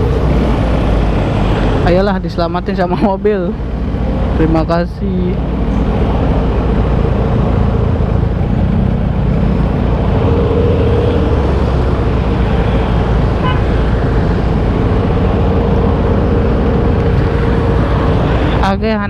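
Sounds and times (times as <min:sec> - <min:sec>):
horn beep: 0:13.4 - 0:13.8.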